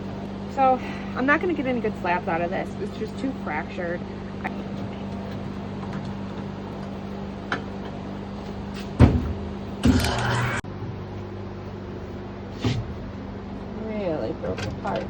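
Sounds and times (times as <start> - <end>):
steady low hum: 0.0 - 15.0
heavy thud on concrete: 9.0 - 9.4.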